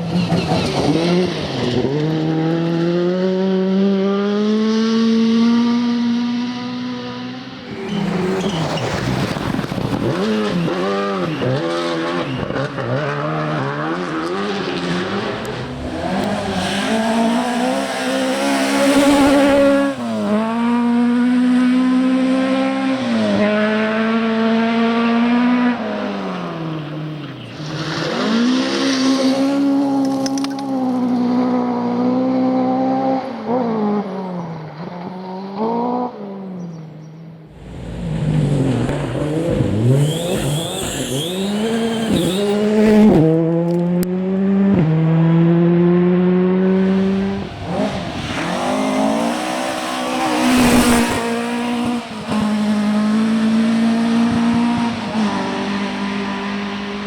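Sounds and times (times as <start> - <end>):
rally car engine revving: 0.0 - 34.1, 37.5 - 57.0
another engine: 37.5 - 44.2.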